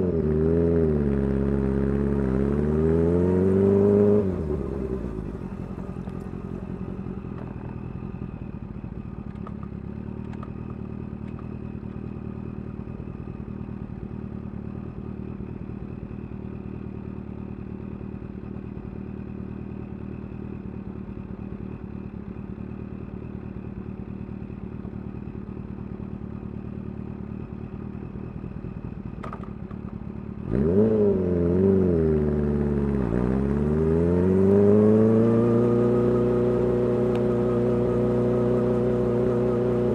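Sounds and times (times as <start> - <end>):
motorcycle engine revving: 0.0 - 7.7, 28.6 - 39.9.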